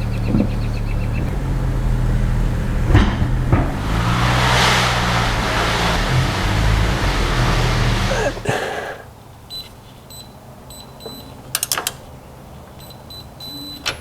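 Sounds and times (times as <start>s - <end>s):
steady low hum: 0.0s - 9.0s
sharp knocks: 0.3s - 9.0s
rushing hiss: 1.3s - 9.1s.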